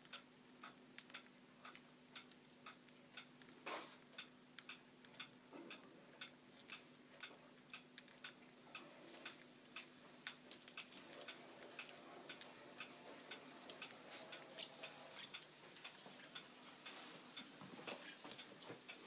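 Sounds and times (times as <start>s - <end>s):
parrots husking seeds: 7.7s - 18.8s.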